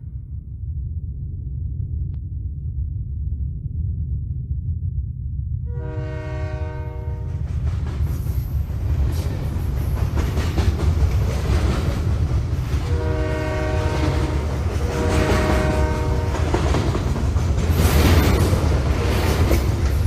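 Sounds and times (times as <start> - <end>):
train rumble and rail clatter: 5.6 - 20.0
train horn blast: 5.7 - 7.5, 12.9 - 16.6.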